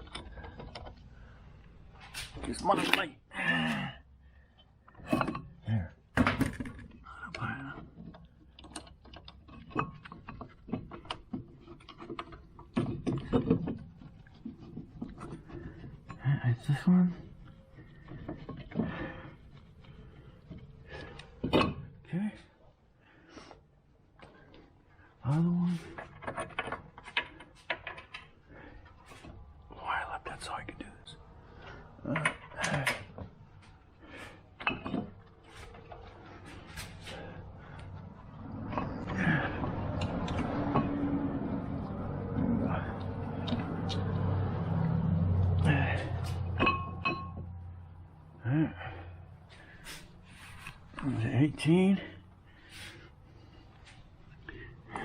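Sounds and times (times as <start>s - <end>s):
metal tools clicking and knocking: 7.9s - 16.2s, 46.0s - 47.6s
metal tools clanking: 34.0s - 37.8s, 45.6s - 47.8s.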